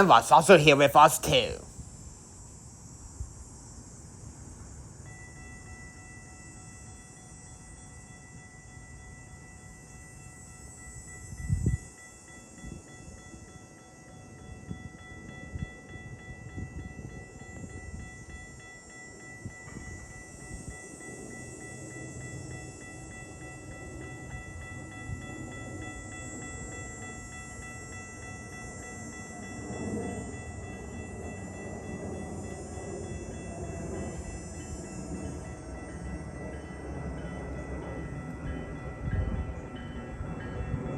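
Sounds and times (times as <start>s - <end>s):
level crossing bells ringing: 0.0s - 1.6s, 5.1s - 40.8s
train hiss: 16.2s - 37.3s.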